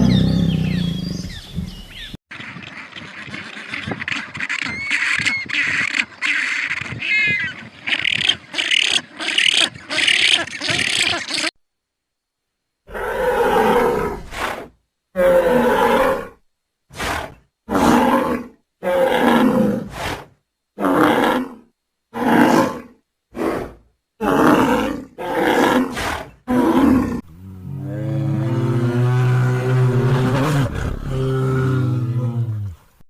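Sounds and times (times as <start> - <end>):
big cat roaring: 12.9 - 16.4, 17.0 - 20.0, 20.8 - 32.8.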